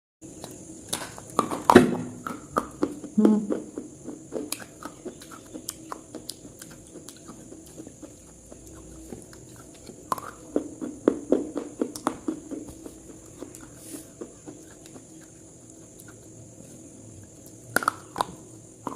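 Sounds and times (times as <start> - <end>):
steady high hiss: 0.2 - 18.9.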